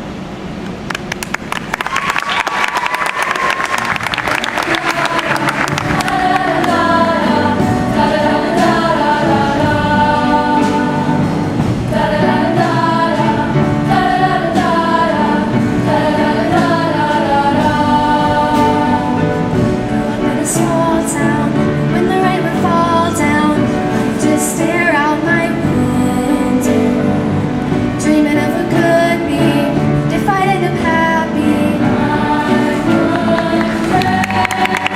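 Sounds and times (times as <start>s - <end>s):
applause: 0.9s - 6.5s, 33.6s - 34.9s
singing with accompaniment: 2.7s - 34.9s.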